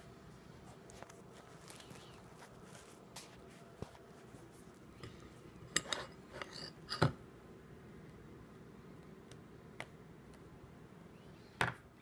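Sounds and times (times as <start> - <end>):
kitchen bowls and utensils clinking: 5.0 - 7.2.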